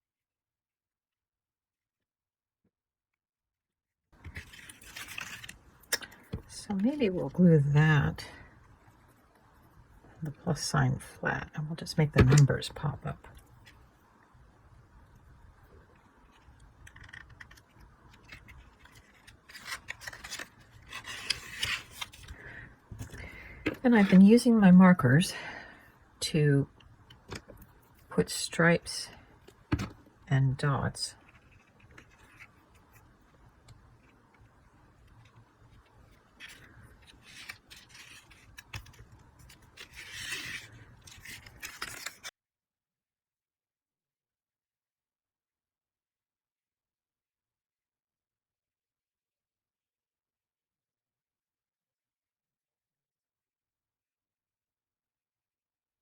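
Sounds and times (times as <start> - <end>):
paper rustling and scraping: 4.2 - 6.3, 16.3 - 24.2, 31.2 - 42.3.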